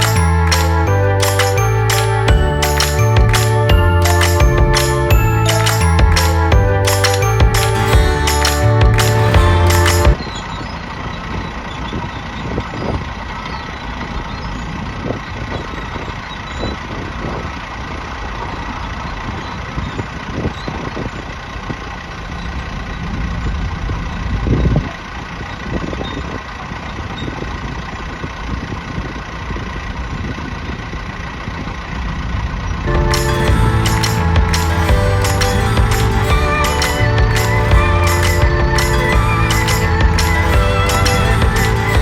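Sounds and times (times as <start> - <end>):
bulldozer diesel engine idling: 32.9 - 42.0.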